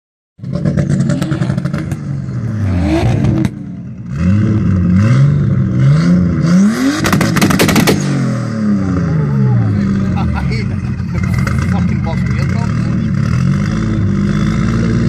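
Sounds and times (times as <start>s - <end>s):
car engine revving: 0.4s - 15.0s
exhaust crackles and pops: 7.0s - 8.1s.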